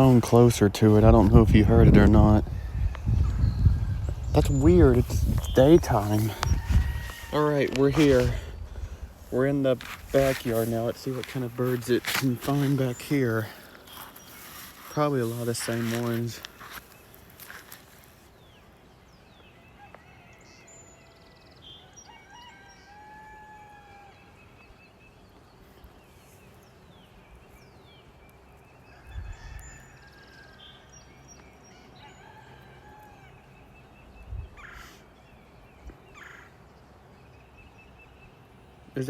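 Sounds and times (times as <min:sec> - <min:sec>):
birds singing: 0:00.0 - 0:39.0
rooster calls: 0:05.6 - 0:08.6, 0:21.9 - 0:24.4.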